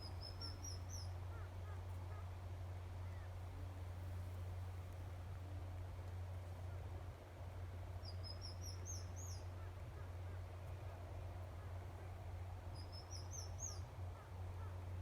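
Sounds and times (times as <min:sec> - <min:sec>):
small bird chirping: 0:00.0 - 0:01.2, 0:08.0 - 0:09.5, 0:12.8 - 0:13.9.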